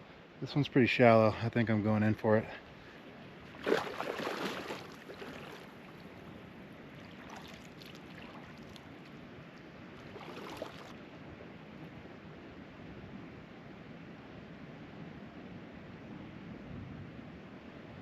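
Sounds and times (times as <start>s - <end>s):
water splashing: 3.5s - 9.3s, 9.9s - 11.0s.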